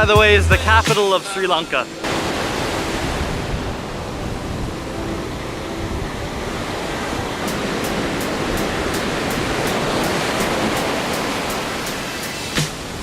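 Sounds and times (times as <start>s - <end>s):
surf crashing on beach: 0.9s - 13.0s.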